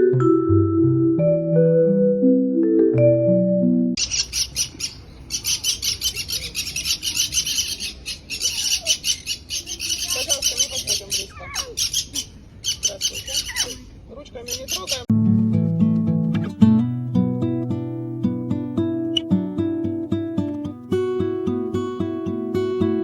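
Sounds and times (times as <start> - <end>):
small birds chirping: 4.0 - 15.1.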